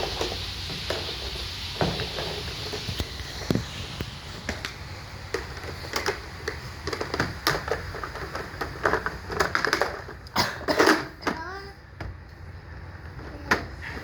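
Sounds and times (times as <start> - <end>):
toys clattering and clicking: 4.5 - 12.4.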